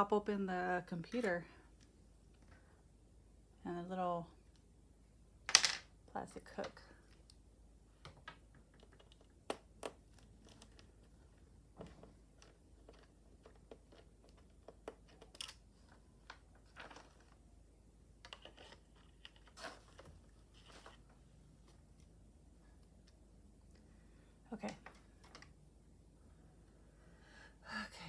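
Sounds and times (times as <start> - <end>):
plastic clicks and scrapes: 11.8 - 17.4, 18.2 - 21.1.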